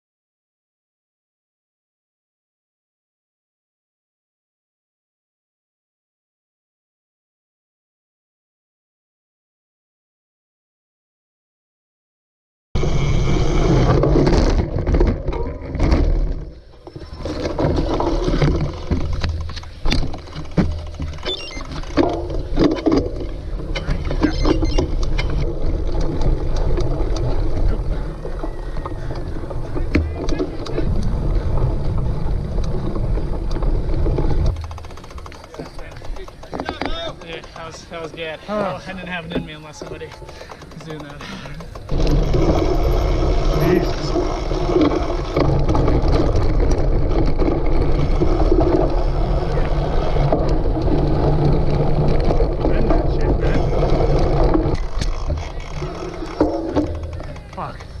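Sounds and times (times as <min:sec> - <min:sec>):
bike rumbling over rough ground: 0:12.8 - 0:58.0
sharp rattles and knocks: 0:13.8 - 0:31.2, 0:31.9 - 0:58.0.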